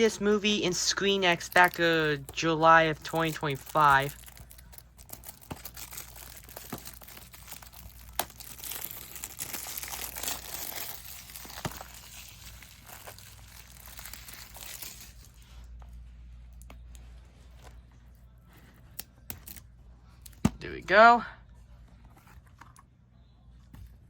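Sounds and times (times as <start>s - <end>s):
plastic packaging crinkling and tearing: 0.9s - 15.7s.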